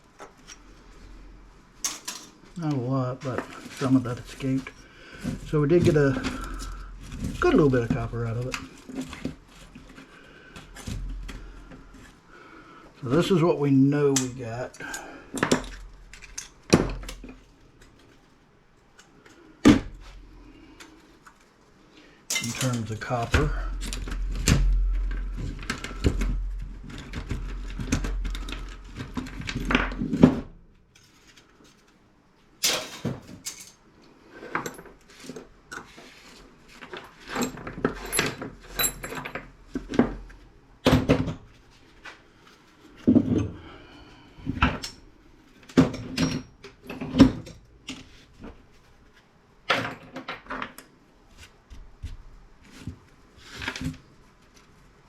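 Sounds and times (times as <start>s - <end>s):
scrap metal clinking and rattling: 1.8s - 2.4s, 22.3s - 30.2s, 36.8s - 40.0s.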